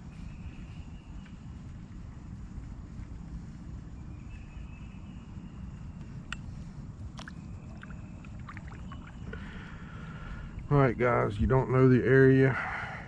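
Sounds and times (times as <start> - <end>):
water and wind rumble on hull: 6.2 - 11.5.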